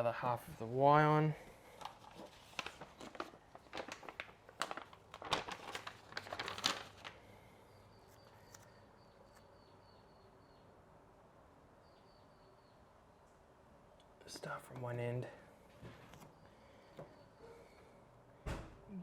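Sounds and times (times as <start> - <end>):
sticker backing sheet crinkling: 1.8 - 7.2.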